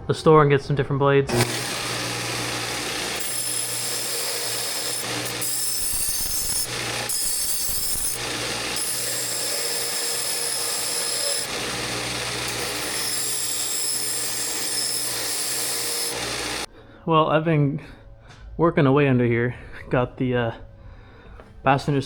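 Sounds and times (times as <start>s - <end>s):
bandsaw cutting metal tubing: 1.3s - 16.7s.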